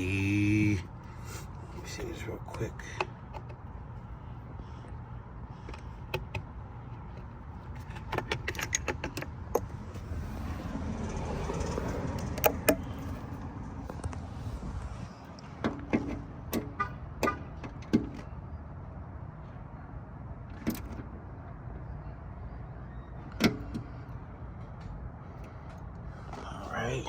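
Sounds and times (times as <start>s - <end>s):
car rumbling: 0.0s - 27.0s
metallic clicks and knocks: 5.6s - 9.8s.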